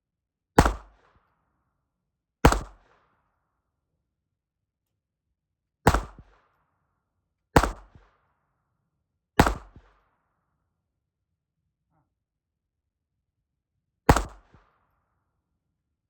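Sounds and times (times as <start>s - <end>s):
pistol shots with echo: 0.6s - 1.1s, 2.4s - 3.0s, 5.8s - 6.4s, 7.6s - 8.1s, 9.4s - 10.0s, 14.1s - 14.6s.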